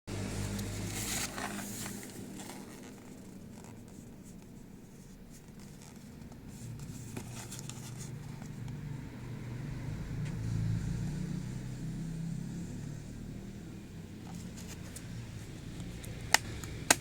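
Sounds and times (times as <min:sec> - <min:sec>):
card packaging rustling: 0:00.4 - 0:08.5.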